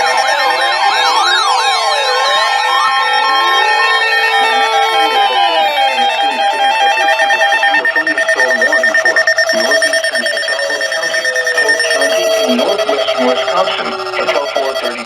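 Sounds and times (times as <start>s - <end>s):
falling siren-like glides: 0.0s - 15.0s
steady alert tones: 0.0s - 15.0s
warbling alert tones: 0.0s - 15.0s.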